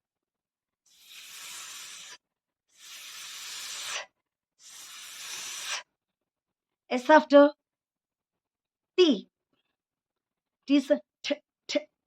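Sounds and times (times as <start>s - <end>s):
person hissing sss sound: 0.9s - 5.9s.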